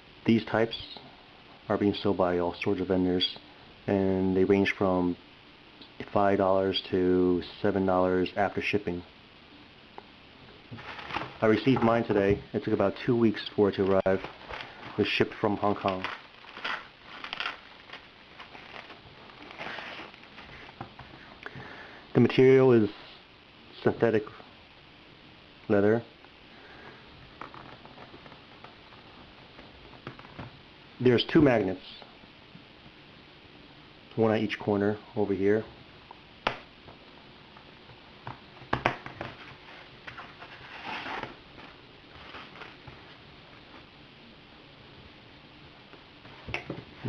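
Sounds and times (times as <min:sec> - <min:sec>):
packaging rustling and crinkling: 0:10.6 - 0:21.3, 0:38.3 - 0:43.9.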